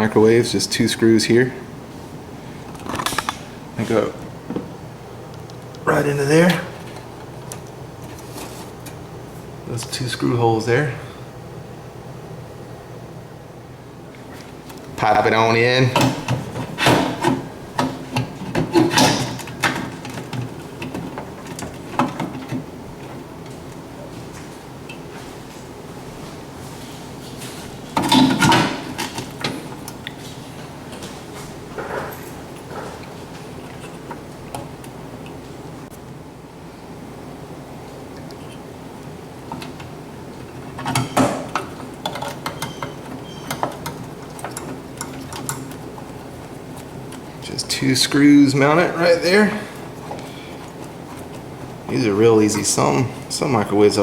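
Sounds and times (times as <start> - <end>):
metal knocks clicks and scraping: 16.0 - 22.6, 28.0 - 29.6, 40.7 - 45.8.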